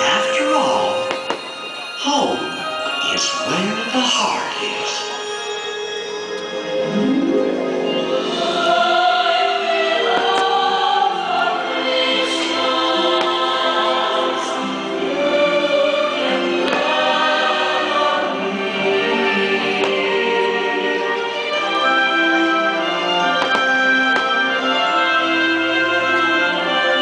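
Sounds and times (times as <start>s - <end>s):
orchestral music: 0.0s - 27.0s
choir singing: 6.5s - 27.0s.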